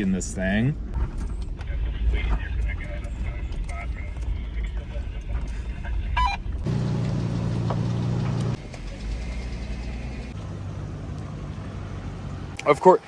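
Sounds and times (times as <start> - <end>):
car engine running at low speed: 6.5 - 12.6.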